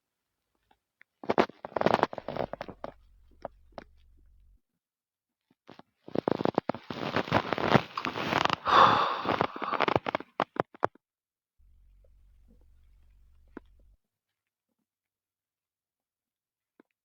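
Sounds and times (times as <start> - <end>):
stomach growling: 1.2 - 4.6, 6.1 - 10.9, 11.6 - 14.0.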